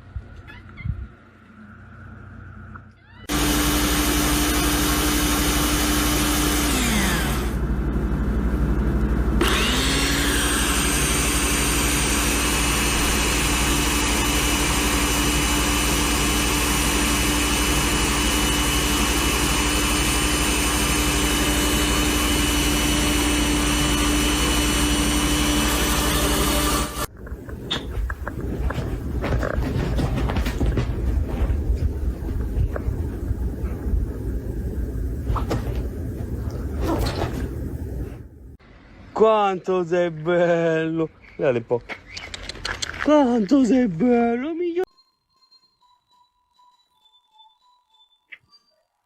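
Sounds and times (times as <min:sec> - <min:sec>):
appliance motor whining: 0:03.3 - 0:07.7, 0:09.3 - 0:38.6.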